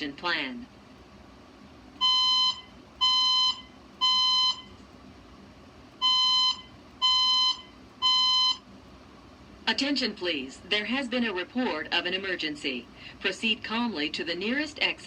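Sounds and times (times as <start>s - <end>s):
fire alarm beeps: 2.0s - 4.7s, 6.0s - 8.6s.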